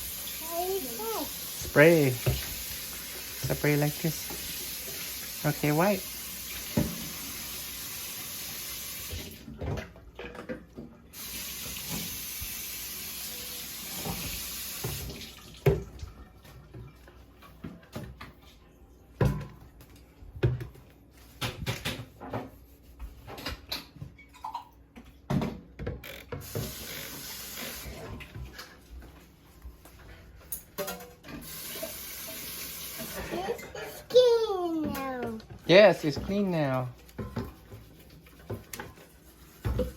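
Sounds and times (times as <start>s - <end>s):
kitchen tap running: 0.0s - 9.8s, 11.1s - 16.0s, 26.3s - 28.6s, 30.8s - 39.9s.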